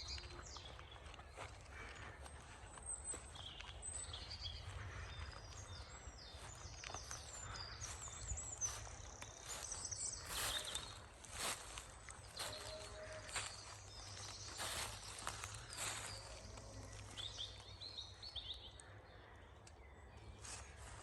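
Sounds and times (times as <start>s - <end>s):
songbirds chirping and trilling: 0.0s - 21.0s.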